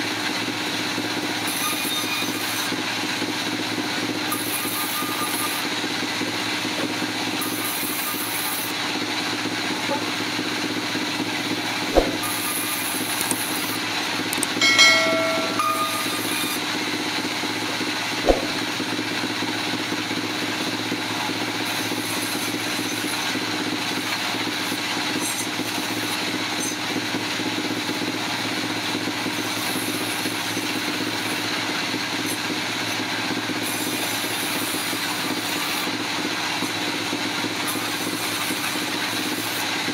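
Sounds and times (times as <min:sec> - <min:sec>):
sharp knocks: 0:12.0 - 0:12.3, 0:18.3 - 0:18.6.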